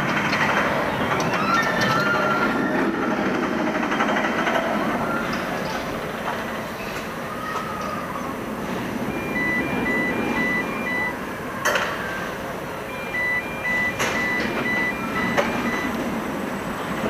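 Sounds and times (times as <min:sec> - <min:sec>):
rumbling ride machinery: 0:00.0 - 0:17.0
two-tone warning beeps: 0:09.0 - 0:11.2, 0:12.8 - 0:16.2.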